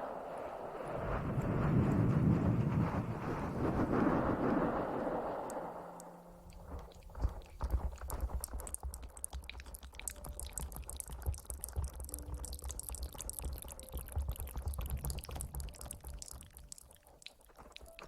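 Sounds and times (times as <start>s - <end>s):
wet crackling and squishing hair: 6.5s - 18.0s.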